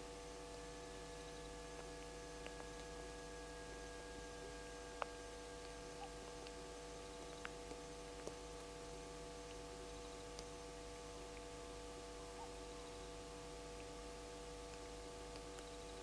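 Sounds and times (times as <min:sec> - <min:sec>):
steady electrical hum: 0:00.0 - 0:16.0
faint clicks: 0:05.0 - 0:08.7, 0:10.3 - 0:10.6.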